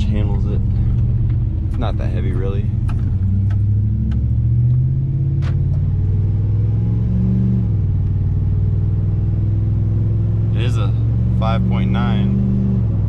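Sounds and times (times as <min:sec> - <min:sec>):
pickup truck engine under load: 0:00.0 - 0:06.1.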